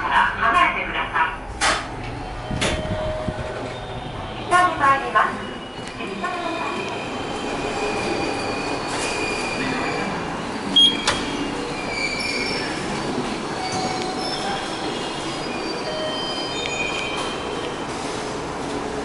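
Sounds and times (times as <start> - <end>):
train rumble: 0.0 - 19.0
train wheels squealing: 7.1 - 17.6.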